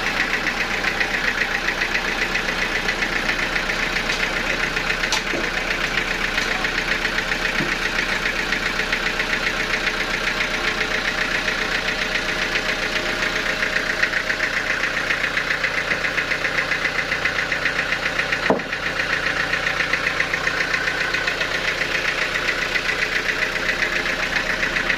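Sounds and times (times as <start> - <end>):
sawmill machinery pulsing: 0.0 - 24.9.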